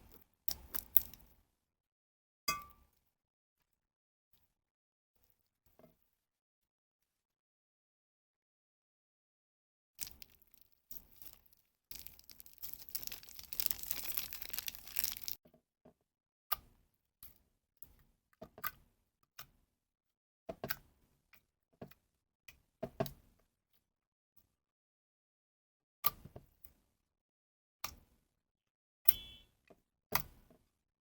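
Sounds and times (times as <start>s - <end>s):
slime and plastic bags crinkling: 0.0s - 1.3s, 10.0s - 15.4s
sticky pops and clicks: 0.5s - 1.2s, 10.0s - 15.4s.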